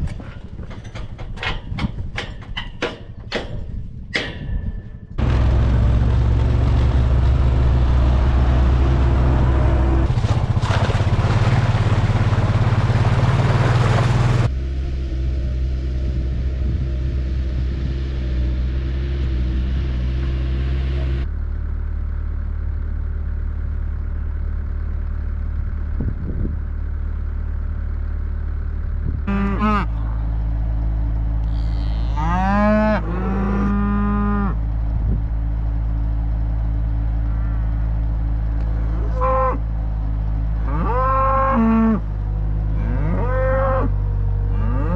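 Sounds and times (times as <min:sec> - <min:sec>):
vehicle engine running: 0:05.1 - 0:44.9
cow mooing: 0:29.3 - 0:30.2, 0:31.4 - 0:34.6, 0:38.8 - 0:39.6, 0:40.6 - 0:42.1, 0:42.7 - 0:44.9.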